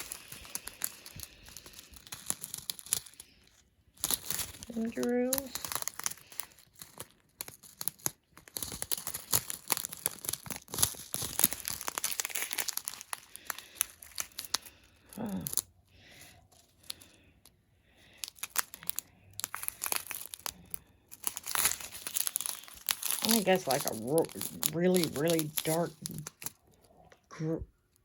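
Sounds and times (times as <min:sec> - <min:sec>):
plastic packets crinkling: 0:00.0 - 0:27.3.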